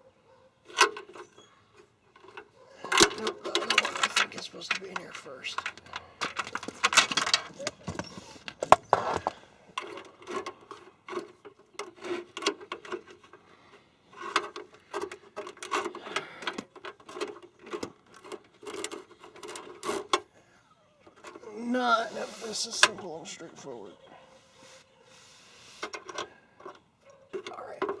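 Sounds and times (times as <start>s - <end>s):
metal fittings clicking and clinking: 2.2s - 13.4s.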